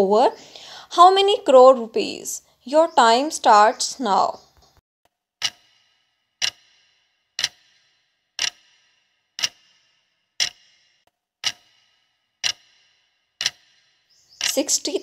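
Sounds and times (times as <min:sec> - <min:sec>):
clock ticking: 0:05.4 - 0:15.0.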